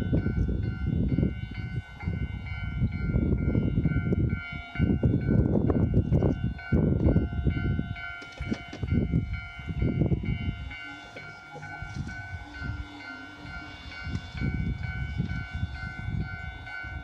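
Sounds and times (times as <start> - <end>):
train wheels clattering on rails: 0.0 - 10.2
level crossing bell ringing: 7.2 - 17.0.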